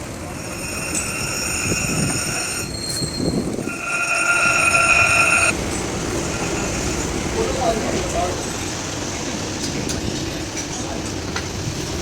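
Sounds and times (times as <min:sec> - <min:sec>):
high-pitched metallic squeal: 0:00.3 - 0:05.6.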